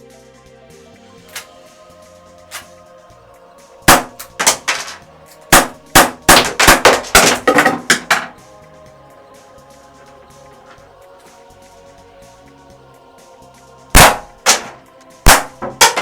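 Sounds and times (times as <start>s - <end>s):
cap gun cracks: 1.3s - 1.6s, 2.5s - 2.8s, 3.9s - 8.4s, 14.0s - 16.0s.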